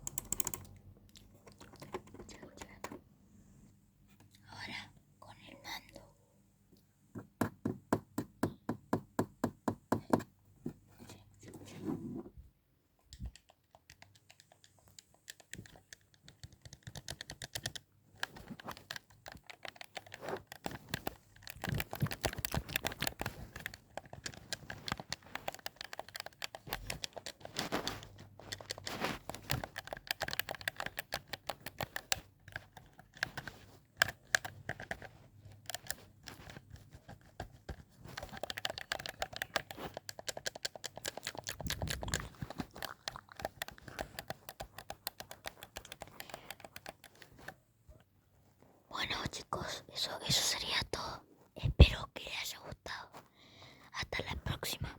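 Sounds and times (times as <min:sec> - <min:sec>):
irregular clicking: 0:00.0 - 0:03.0, 0:13.1 - 0:47.6
close-up tapping: 0:07.1 - 0:10.8
crinkling: 0:17.6 - 0:47.6.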